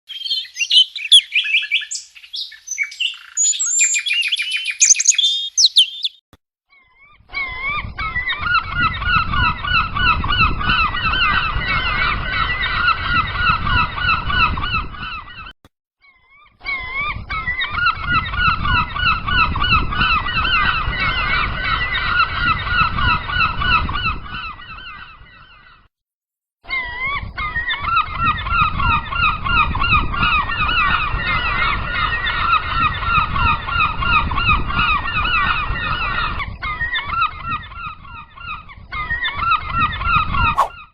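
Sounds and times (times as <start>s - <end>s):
gulls calling: 0.1s - 6.2s
high-pitched chirping with clicks: 2.8s - 6.2s.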